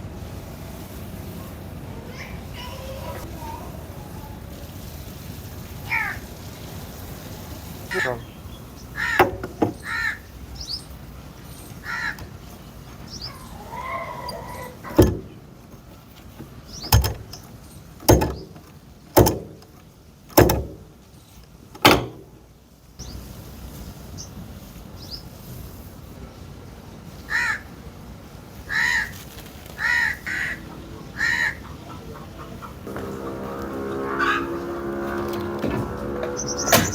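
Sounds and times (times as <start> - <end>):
crows cawing: 5.9 - 6.3, 7.9 - 8.3, 9.0 - 10.4, 11.8 - 12.4, 27.3 - 27.7, 28.7 - 29.2, 29.8 - 35.4
sharp knocks: 9.1 - 9.9, 15.0 - 15.4, 16.8 - 17.4, 18.0 - 19.6, 20.4 - 20.9, 21.8 - 22.3.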